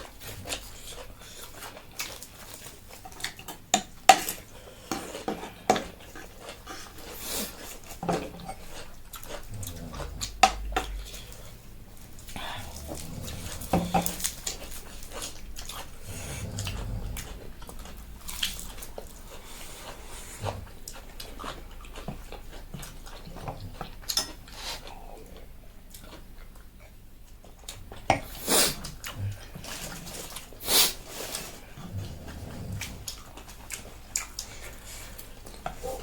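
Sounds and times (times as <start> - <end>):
wet chewing and mouth smacks: 0.0 - 36.0
noodle slurps: 28.2 - 29.0.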